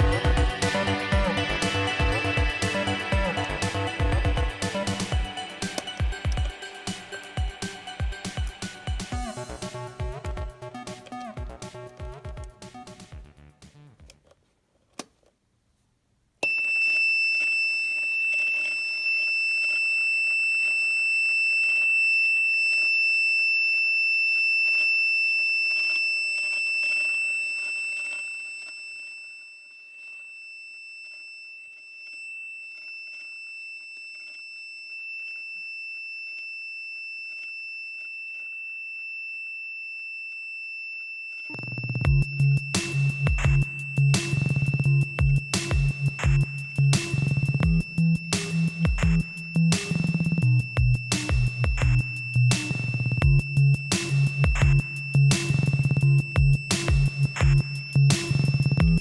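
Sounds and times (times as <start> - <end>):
high-pitched alarm buzzer: 0.0 - 13.1, 41.2 - 59.0
music: 0.0 - 14.2, 41.5 - 59.0.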